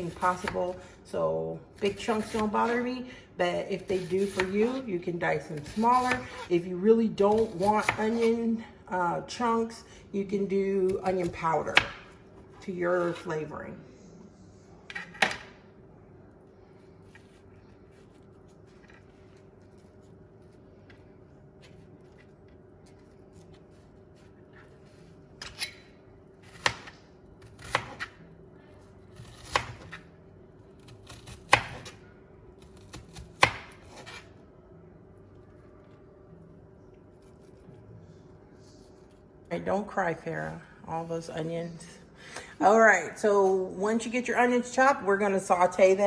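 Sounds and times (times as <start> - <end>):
knife chopping on cutting board: 26.5 - 27.0, 27.6 - 28.2.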